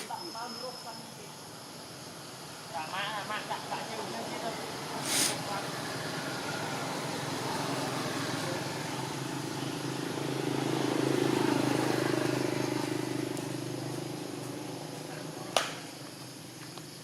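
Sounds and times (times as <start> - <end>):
vehicle passing by: 3.8 - 16.4.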